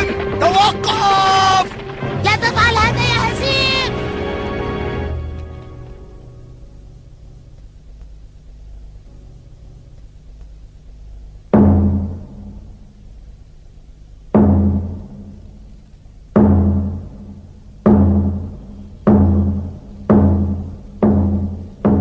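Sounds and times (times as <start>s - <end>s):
deep pitched drum strikes: 11.3s - 22.0s.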